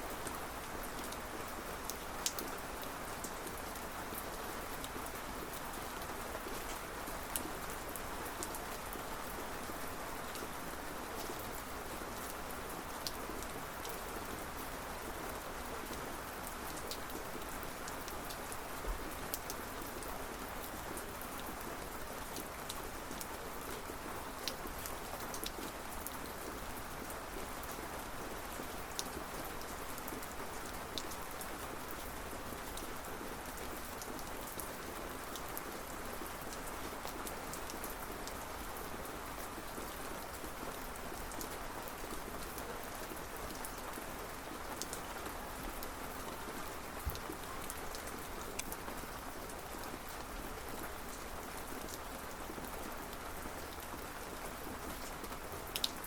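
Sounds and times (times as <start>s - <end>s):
steady rain: 0.0s - 56.0s.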